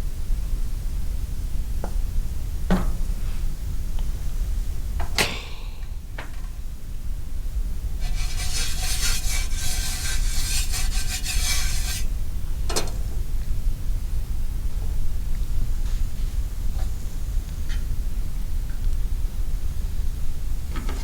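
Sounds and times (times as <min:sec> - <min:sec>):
scraping against a pan: 0:07.9 - 0:12.1.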